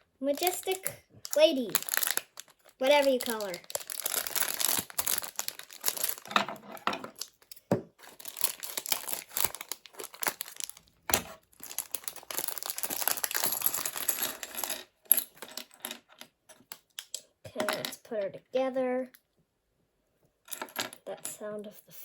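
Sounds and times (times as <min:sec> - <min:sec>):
foil packet crinkling: 0:00.3 - 0:06.4, 0:08.0 - 0:14.1.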